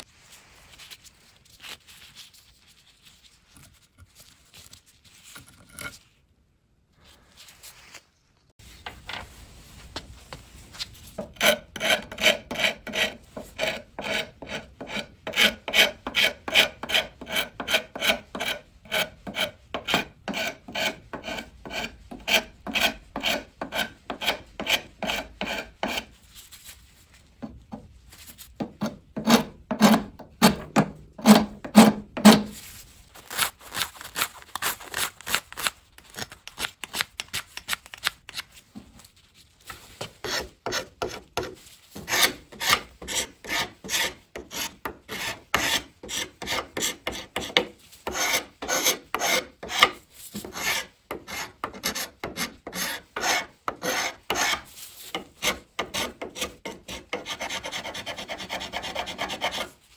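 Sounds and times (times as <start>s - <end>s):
hand tool rasping wood: 11.2s - 26.1s, 28.6s - 32.5s, 40.0s - 59.8s.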